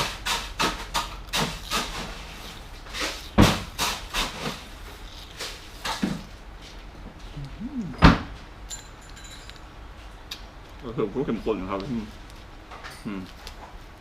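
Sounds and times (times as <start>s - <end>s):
person humming with enjoyment: 7.3s - 8.3s
crunches and clatters of eating: 11.6s - 14.0s.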